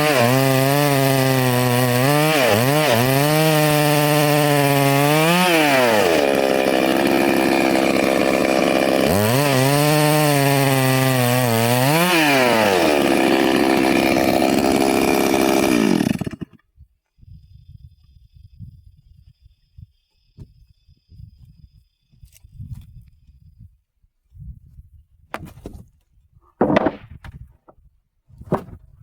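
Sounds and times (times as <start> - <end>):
chainsaw cutting wood: 0.0 - 16.7.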